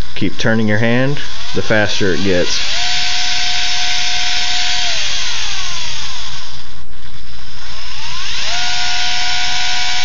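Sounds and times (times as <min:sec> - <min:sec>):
screwdriver motor whining: 0:00.0 - 0:10.0.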